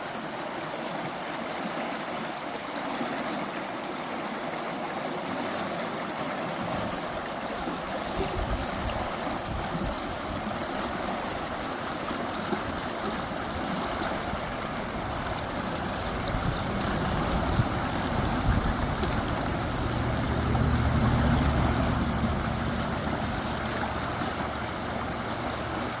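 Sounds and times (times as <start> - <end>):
stream water running: 0.0 - 26.0
low droning hum: 14.2 - 26.0.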